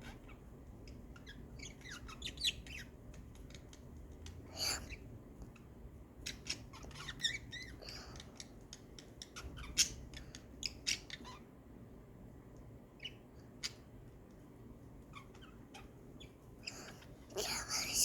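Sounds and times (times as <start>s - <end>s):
birds chirping and squawking: 0.0s - 11.5s.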